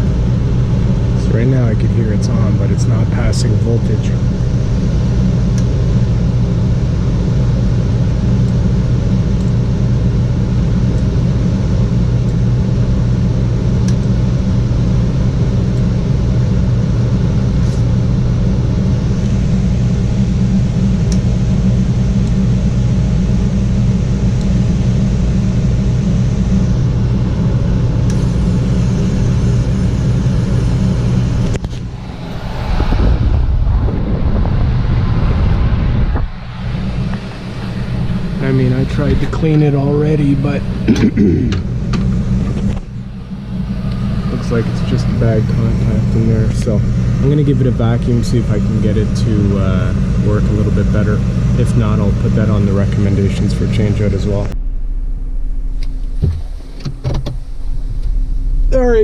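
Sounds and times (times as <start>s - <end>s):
furnace low hum: 0.0s - 59.0s
loud rushing noise: 28.1s - 40.9s, 41.7s - 48.4s.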